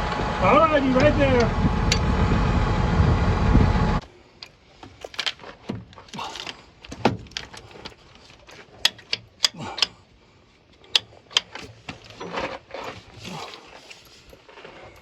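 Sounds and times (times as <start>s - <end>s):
metallic clicks and clanks: 6.1s - 10.0s.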